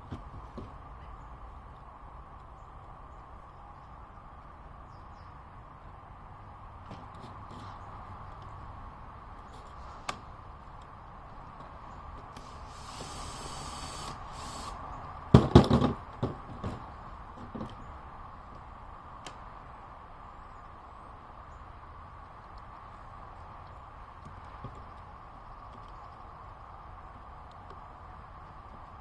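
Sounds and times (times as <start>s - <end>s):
brief hiss: 12.4s - 14.9s.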